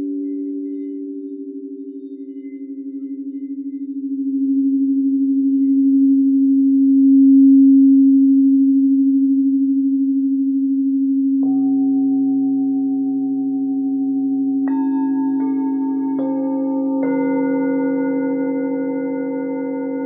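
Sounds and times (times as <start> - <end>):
singing bowl pure tone: 0.0 - 20.0
second bowl struck and ringing: 14.6 - 20.0.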